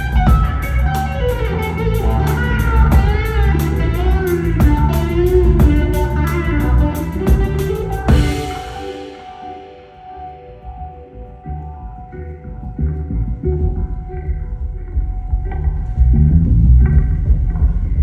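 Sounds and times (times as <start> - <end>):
drum kit cymbal beat: 0.0 - 12.9
held chord ringing out: 0.0 - 17.2
bass guitar: 0.0 - 18.0
electric guitar bending notes: 0.0 - 18.0.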